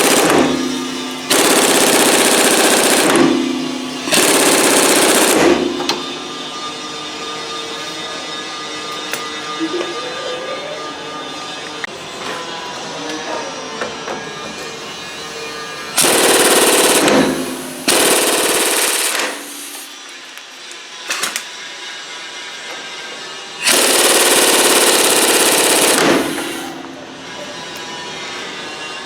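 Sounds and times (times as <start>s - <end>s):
impact wrench hammering: 0.0s - 6.4s, 15.9s - 19.9s, 23.6s - 27.0s.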